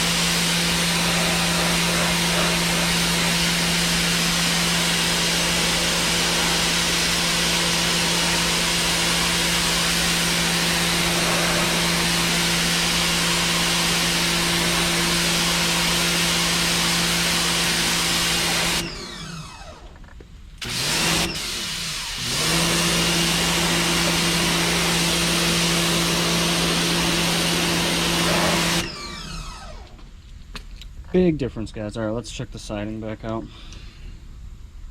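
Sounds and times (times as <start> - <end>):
water spray hissing: 0.0 - 15.8
pressure washer motor humming: 0.0 - 20.0, 20.6 - 30.0.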